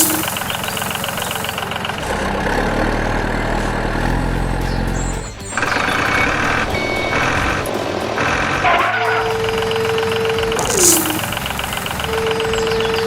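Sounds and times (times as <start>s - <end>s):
repeating beeps: 0.0s - 2.0s, 5.2s - 13.0s
engine running steadily: 0.0s - 13.0s.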